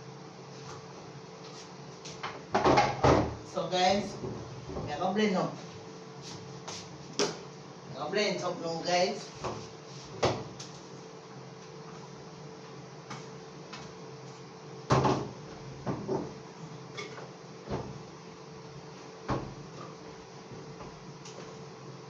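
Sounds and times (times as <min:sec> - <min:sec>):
kitchen items knocking and clattering: 0:02.5 - 0:03.4, 0:14.9 - 0:16.4.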